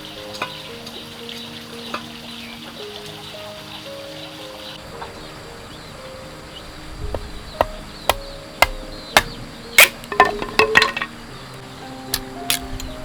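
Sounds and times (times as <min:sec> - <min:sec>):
soft background music: 0:00.0 - 0:13.0
knife chopping on wooden board: 0:07.6 - 0:10.0.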